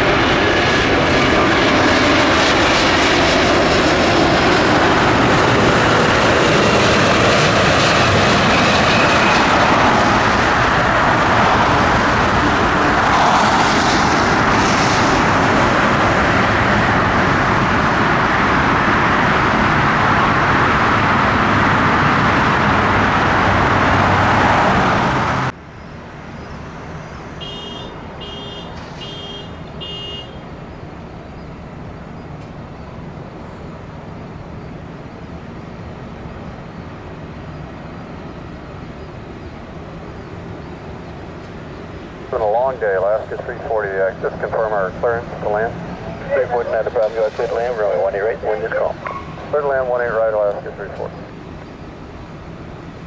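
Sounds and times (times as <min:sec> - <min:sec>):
airport background noise: 0:00.0 - 0:21.0, 0:24.7 - 0:53.0
jet engines running: 0:00.0 - 0:53.0
short electronic beeps: 0:27.4 - 0:30.4.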